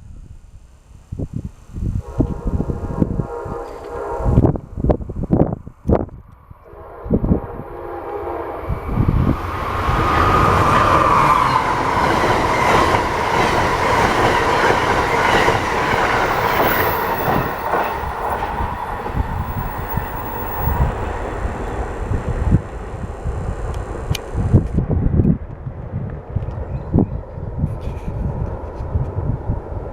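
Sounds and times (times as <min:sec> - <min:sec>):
high-pitched locomotive whine: 0:06.4 - 0:27.5
train wheels clattering over rail joints: 0:10.6 - 0:21.2.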